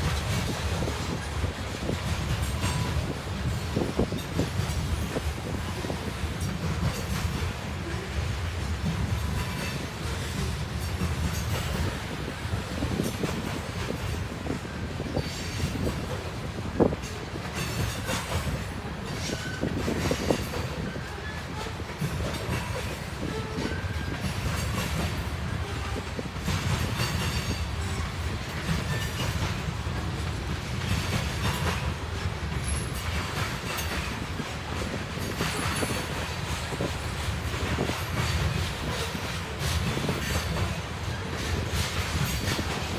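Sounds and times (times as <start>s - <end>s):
freight train rumbling past: 0.0s - 42.9s
wheels clicking over rail joints: 15.2s - 42.9s.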